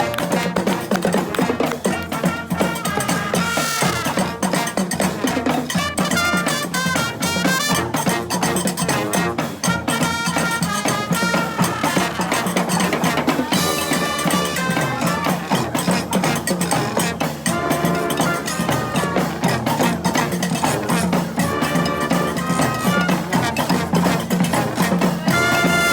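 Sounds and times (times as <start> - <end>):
brass instruments playing: 0.0 - 25.9
drums and percussion: 0.0 - 25.9.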